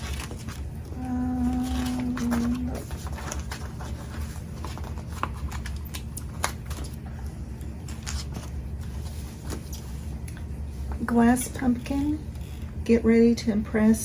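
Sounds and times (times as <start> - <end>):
packaging clicks and rustles: 0.0 - 11.0
steady low hum: 0.0 - 14.0.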